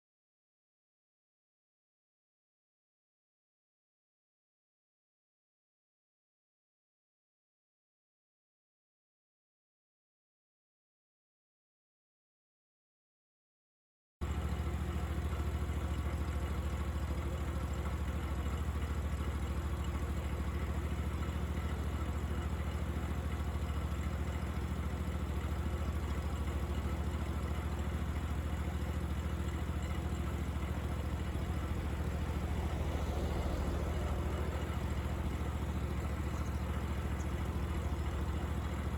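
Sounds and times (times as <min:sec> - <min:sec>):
car engine idling: 0:14.2 - 0:38.9.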